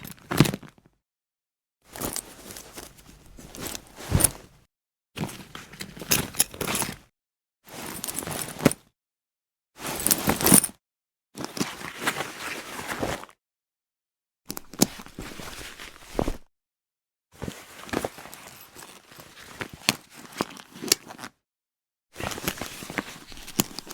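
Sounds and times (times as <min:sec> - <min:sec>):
travel bag rustling and scraping: 0:01.9 - 0:07.1, 0:07.7 - 0:08.8, 0:09.8 - 0:10.7, 0:14.5 - 0:16.5, 0:17.4 - 0:21.3, 0:22.2 - 0:23.9.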